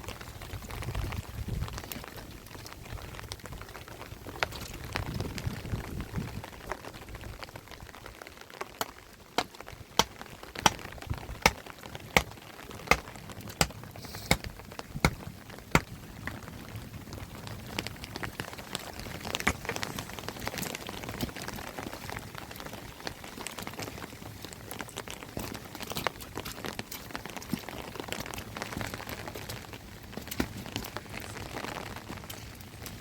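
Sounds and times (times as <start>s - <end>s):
rain falling: 0.0s - 33.0s
sharp evenly spaced taps: 9.4s - 10.8s.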